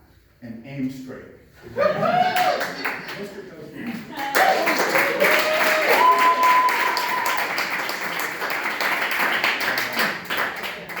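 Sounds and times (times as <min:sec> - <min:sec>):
audience applauding: 0:02.2 - 0:03.3, 0:04.1 - 0:11.0.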